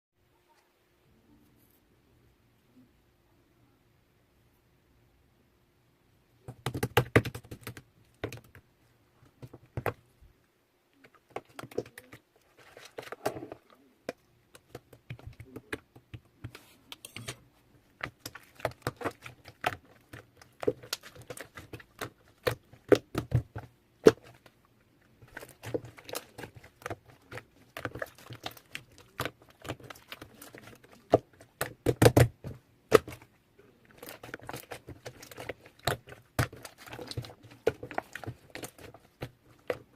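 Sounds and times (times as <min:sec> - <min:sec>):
plastic containers clicking and knocking: 0:06.4 - 0:08.6, 0:25.2 - 0:39.9.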